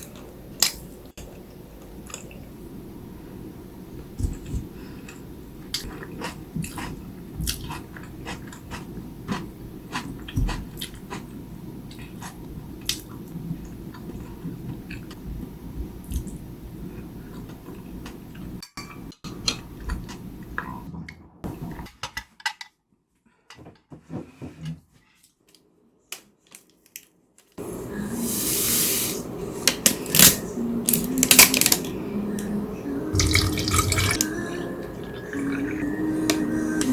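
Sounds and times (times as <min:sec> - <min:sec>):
person chewing food: 0:04.2 - 0:15.2.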